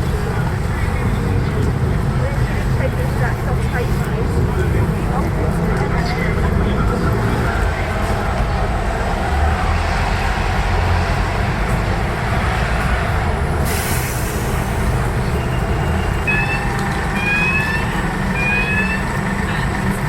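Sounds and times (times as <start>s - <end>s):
train low rumble: 0.0s - 20.0s
train hiss: 13.6s - 15.1s.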